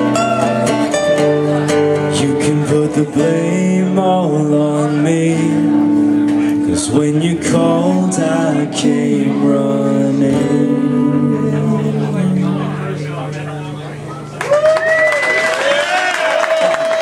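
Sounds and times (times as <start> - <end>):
acoustic guitar strumming: 0.0 - 14.3
person singing long notes: 6.5 - 12.8.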